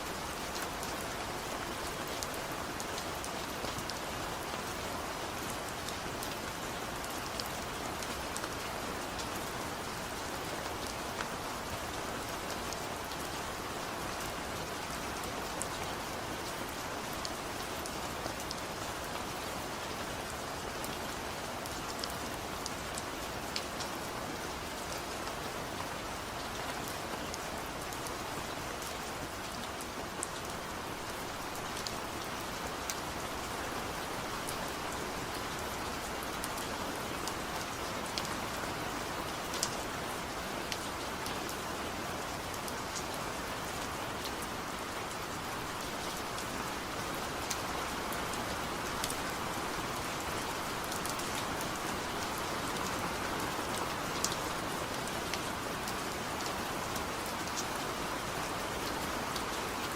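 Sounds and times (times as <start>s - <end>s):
steady rain hiss: 0.0s - 59.9s
raindrops ticking close by: 44.2s - 57.7s.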